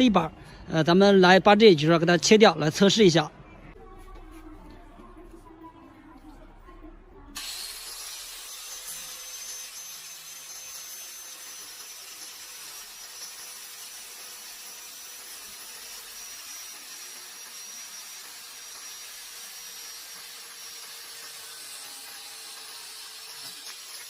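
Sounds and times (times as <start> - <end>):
power tool motor whine: 7.4 - 24.0.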